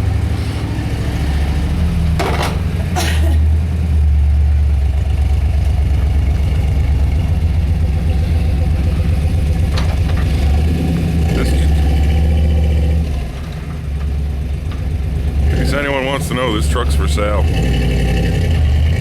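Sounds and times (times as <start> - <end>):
truck engine rumbling: 0.0 - 19.0
sharp knocks: 2.2 - 3.0.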